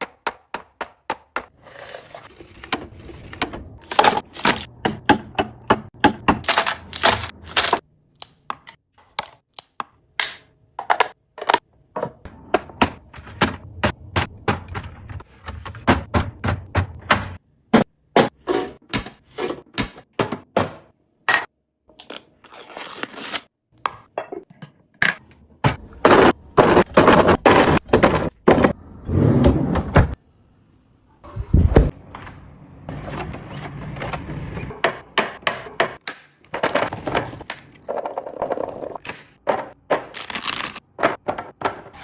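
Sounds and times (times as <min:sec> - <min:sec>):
containers clacking and thunking: 0:02.2 - 0:07.8, 0:10.2 - 0:20.8, 0:24.3 - 0:28.8, 0:35.0 - 0:42.0.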